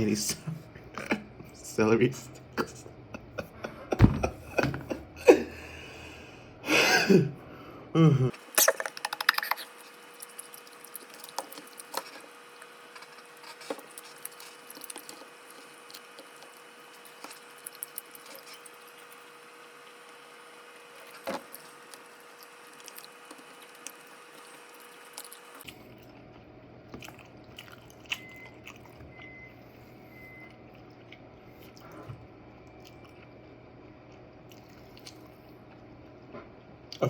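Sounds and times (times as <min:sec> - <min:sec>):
faint steady hum: 0:00.0 - 0:37.0
noisy breath: 0:05.5 - 0:08.0
person chewing: 0:08.4 - 0:29.4, 0:34.1 - 0:35.8.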